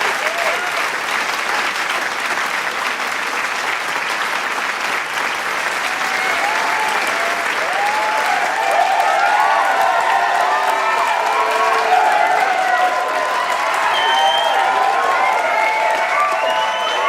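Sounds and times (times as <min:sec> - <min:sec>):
crowd cheering and shouting: 0:00.0 - 0:00.9, 0:05.8 - 0:17.0
crowd clapping: 0:00.0 - 0:17.0.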